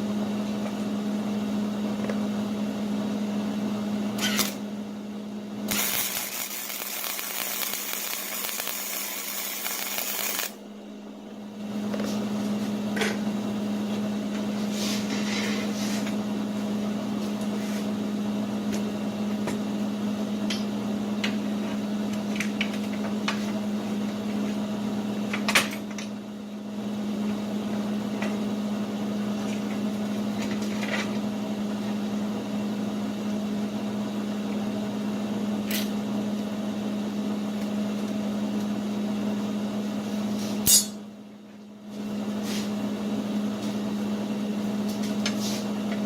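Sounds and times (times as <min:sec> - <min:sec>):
forge humming: 0:00.0 - 0:25.4.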